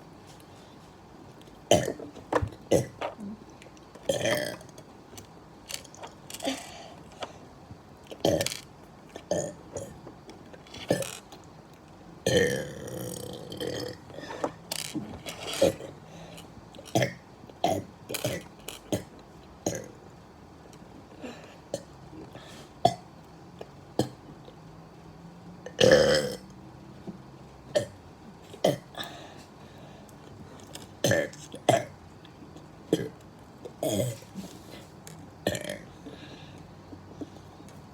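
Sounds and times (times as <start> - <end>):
person burping: 1.7 - 3.0, 4.1 - 4.7, 8.2 - 8.6, 12.2 - 14.6, 25.7 - 26.5, 31.0 - 31.9, 33.8 - 34.2, 35.4 - 35.9.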